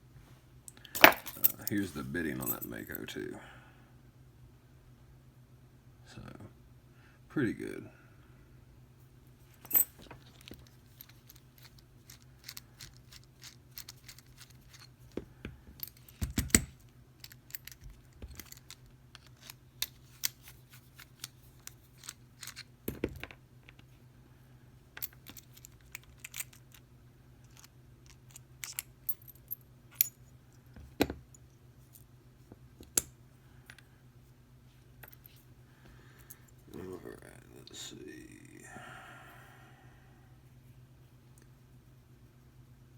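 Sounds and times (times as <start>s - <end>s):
metal tools clicking and clinking: 0.9s - 3.0s, 9.6s - 14.9s.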